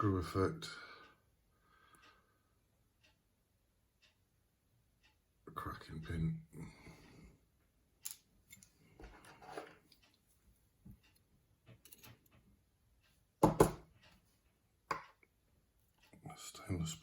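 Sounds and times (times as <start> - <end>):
lock pins and tools clicking: 11.7 - 12.4.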